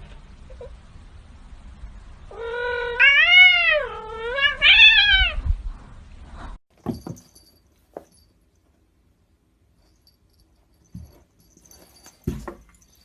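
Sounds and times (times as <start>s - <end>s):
cat meowing: 2.3s - 5.4s.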